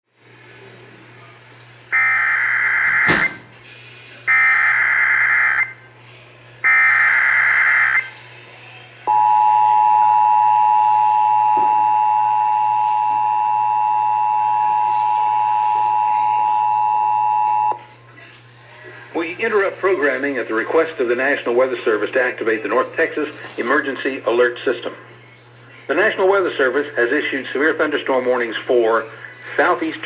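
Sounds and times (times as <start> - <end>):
data header bursts: 2.0 - 3.1, 4.3 - 5.7
two-tone attention signal: 9.1 - 17.8.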